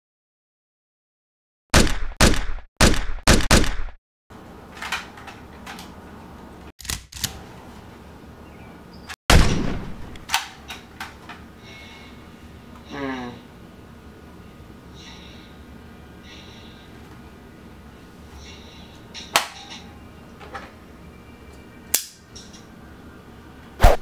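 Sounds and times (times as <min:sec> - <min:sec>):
loud gunshots: 0:01.7 - 0:04.0, 0:09.3 - 0:10.0.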